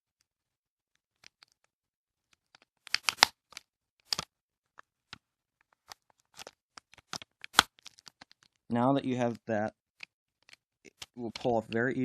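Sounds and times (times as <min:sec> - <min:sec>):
tape crinkling: 0:02.3 - 0:04.3, 0:05.7 - 0:08.7.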